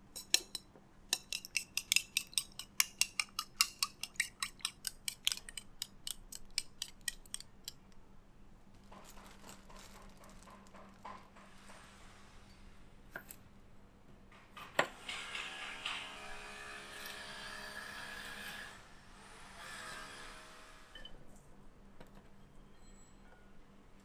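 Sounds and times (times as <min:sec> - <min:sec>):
knife clicking cutting food: 0:00.2 - 0:07.8.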